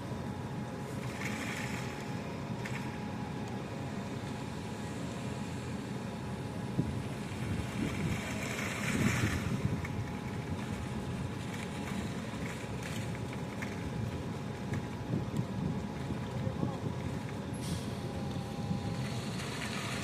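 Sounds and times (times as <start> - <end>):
construction machinery engine rumble: 0.0 - 20.0.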